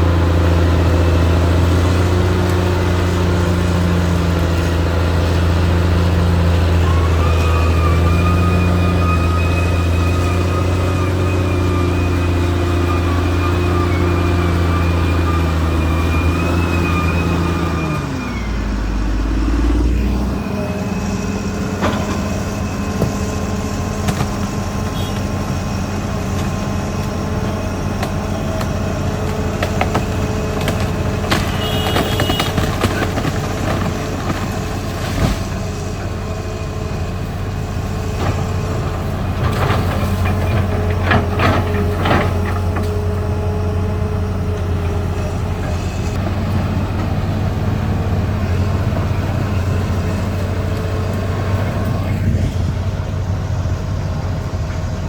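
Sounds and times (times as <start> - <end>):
bulldozer diesel engine running: 0.0 - 55.0.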